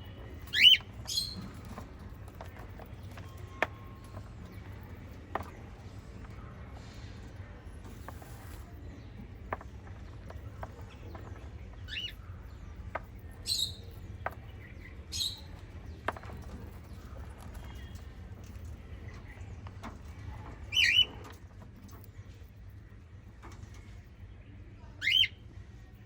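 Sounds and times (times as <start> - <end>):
parrot chirping: 0.5 - 1.4.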